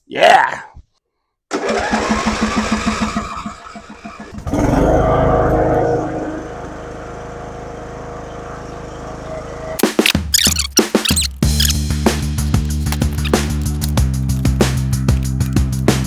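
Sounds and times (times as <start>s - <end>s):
lawnmower engine starting: 1.6s - 3.3s.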